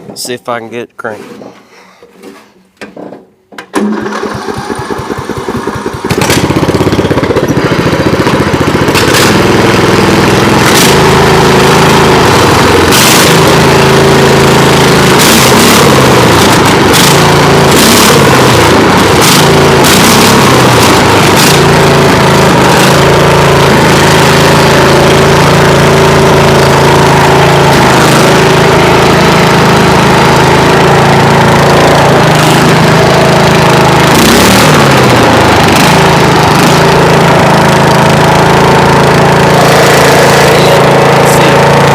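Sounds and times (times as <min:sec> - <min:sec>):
lawn mower engine running: 0:00.0 - 0:00.5, 0:03.5 - 0:41.9.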